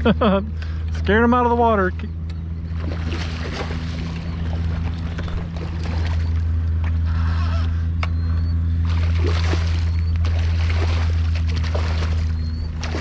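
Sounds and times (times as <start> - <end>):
boat motor humming: 0.0 - 13.0
water washing: 2.8 - 6.4, 8.9 - 13.0.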